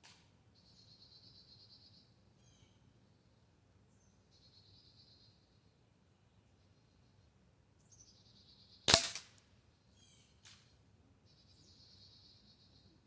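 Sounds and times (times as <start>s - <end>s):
air rifle crack: 8.9s - 9.4s.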